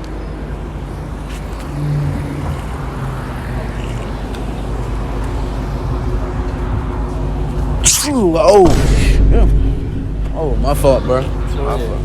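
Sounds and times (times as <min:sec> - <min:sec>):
street traffic rumble: 0:00.0 - 0:12.0
vehicle engine humming: 0:00.0 - 0:12.0.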